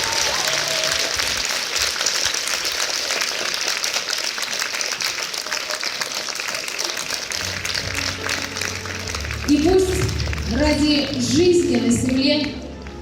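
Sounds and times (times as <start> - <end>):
audience applauding: 0.0 - 13.0.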